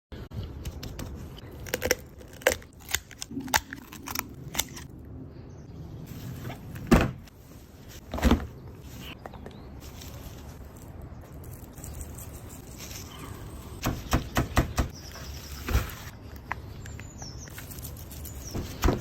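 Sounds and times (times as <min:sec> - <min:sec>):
bones crunching: 0:01.4 - 0:05.0.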